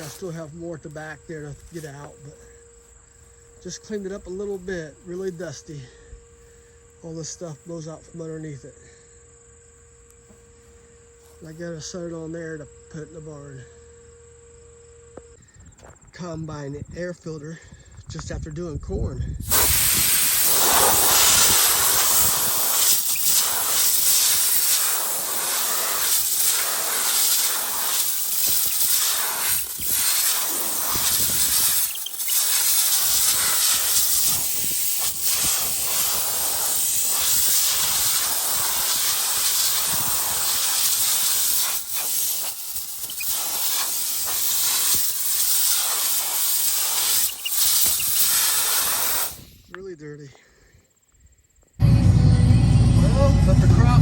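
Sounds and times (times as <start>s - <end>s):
compressed air hissing: 0.0s - 0.4s, 19.4s - 49.7s.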